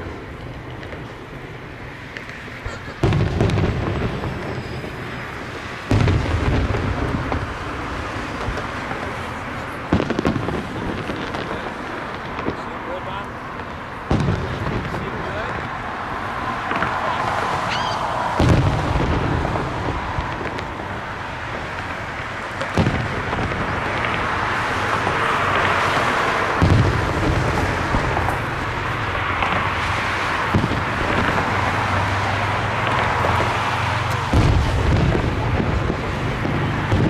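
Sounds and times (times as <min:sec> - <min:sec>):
firework shells booming: 0:00.0 - 0:37.0
rising firework whistle: 0:00.0 - 0:37.0.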